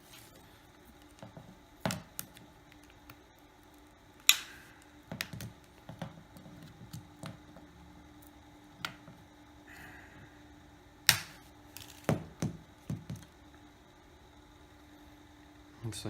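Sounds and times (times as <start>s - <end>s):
plastic phone cover clips popping: 11.1s - 12.1s.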